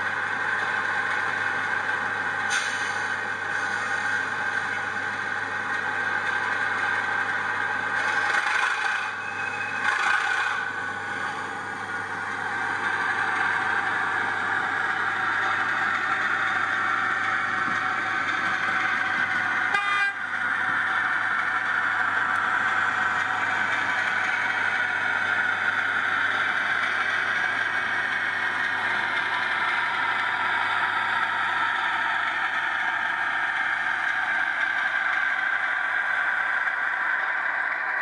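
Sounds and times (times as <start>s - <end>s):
model locomotive engine sound: 0.0s - 38.0s
horn blasts: 19.7s - 20.2s.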